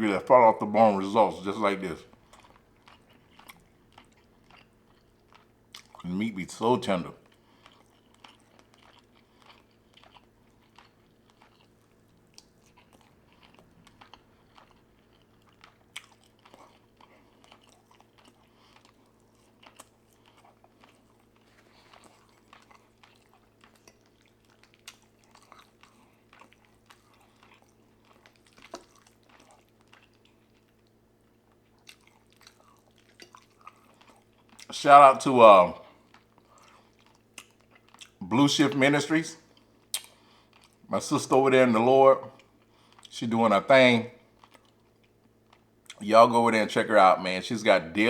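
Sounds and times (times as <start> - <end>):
chewing soft food: 0.0 - 43.3, 44.2 - 48.0
faint low hum: 0.0 - 48.0
wet mouth clicks and smacks: 39.9 - 40.2.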